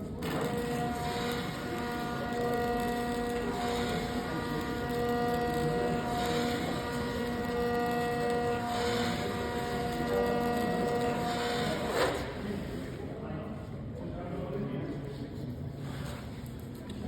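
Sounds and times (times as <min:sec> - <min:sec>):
machine hum with whine: 0:00.0 - 0:13.0.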